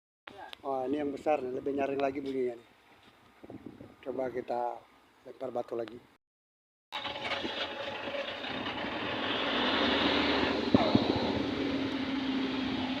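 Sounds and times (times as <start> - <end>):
sharp crack: 7.3 - 11.7.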